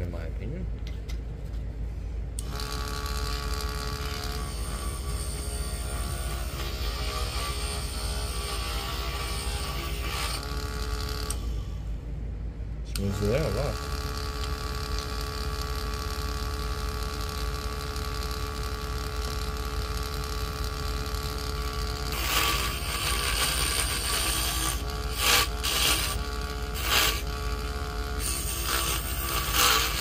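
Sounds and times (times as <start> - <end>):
lathe motor whining: 2.4 - 11.7, 13.0 - 30.0
chisel scraping spinning wood: 21.2 - 30.0.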